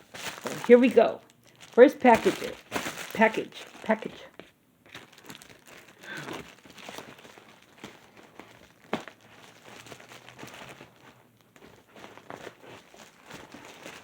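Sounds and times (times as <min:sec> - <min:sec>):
package rustling: 0:00.0 - 0:14.0.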